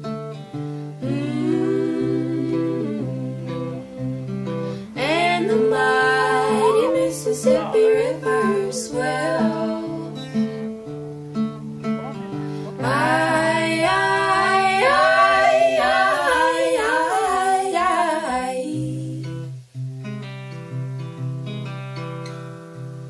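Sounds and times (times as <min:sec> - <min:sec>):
acoustic guitar picking: 0:00.0 - 0:18.0, 0:18.8 - 0:23.0
women singing in harmony: 0:01.0 - 0:10.7, 0:12.8 - 0:19.5.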